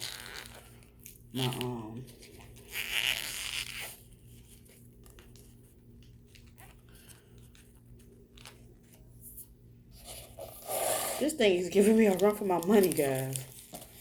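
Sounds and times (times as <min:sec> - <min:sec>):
packing tape tearing off box: 0:00.0 - 0:04.0.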